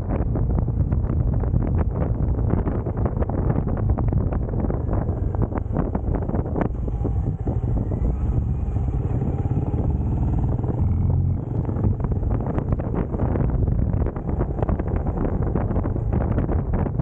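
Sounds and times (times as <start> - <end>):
motorcycle engine running: 0.0 - 17.0
wind buffeting microphone: 0.0 - 17.0.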